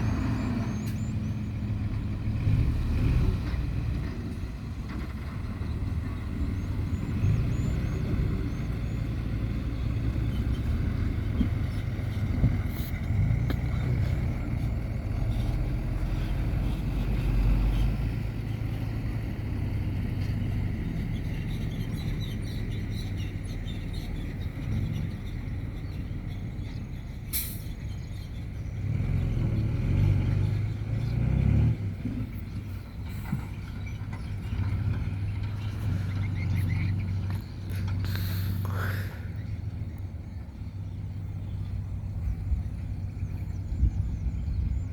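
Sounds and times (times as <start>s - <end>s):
construction machine engine rumbling: 0.0s - 44.9s.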